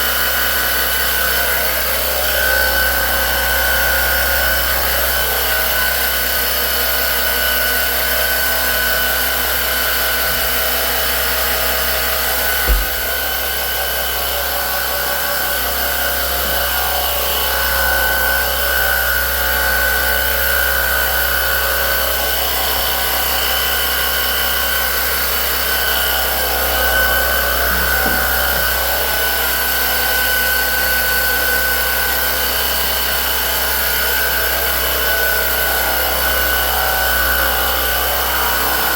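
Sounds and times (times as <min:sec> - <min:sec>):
cleaning machine whining: 0:00.0 - 0:38.9
short knock: 0:12.6 - 0:13.2.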